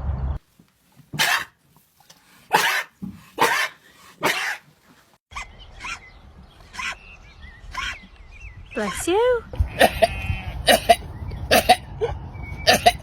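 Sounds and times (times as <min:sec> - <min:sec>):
sheep sneezing: 0:01.2 - 0:01.6, 0:02.5 - 0:04.7, 0:09.7 - 0:11.9.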